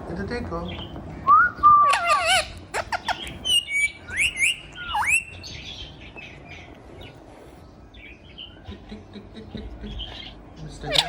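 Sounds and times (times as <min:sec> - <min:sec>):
parakeet chirps and squawks: 0:01.8 - 0:07.2, 0:09.9 - 0:11.0.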